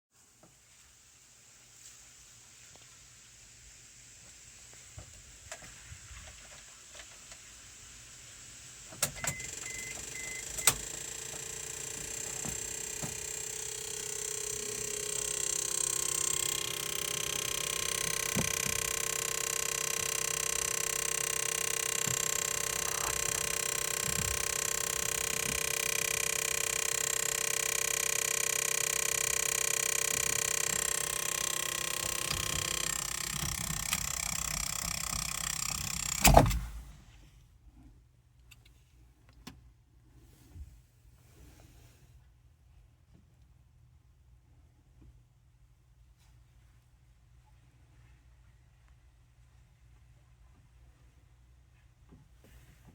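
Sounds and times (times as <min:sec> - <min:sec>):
relay clicks: 0:09.0 - 0:36.8
relay electrical buzzing ring: 0:09.2 - 0:36.5.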